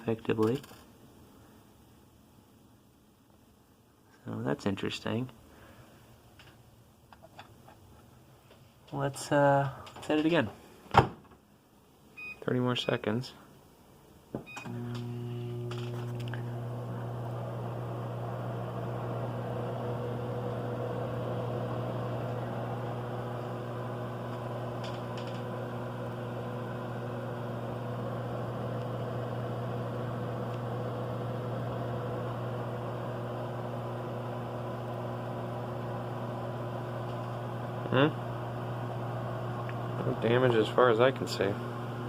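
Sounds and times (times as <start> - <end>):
microwave oven humming: 14.5 - 42.0.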